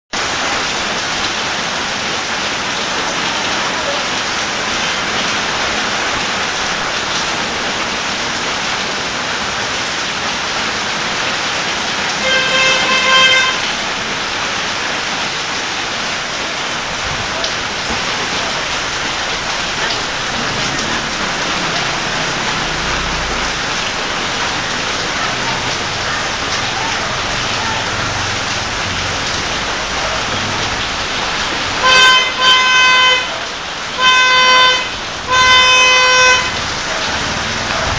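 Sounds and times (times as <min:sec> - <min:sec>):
heavy rain pouring: 0:00.2 - 0:37.9
horn sounding: 0:12.2 - 0:13.8, 0:31.7 - 0:36.9.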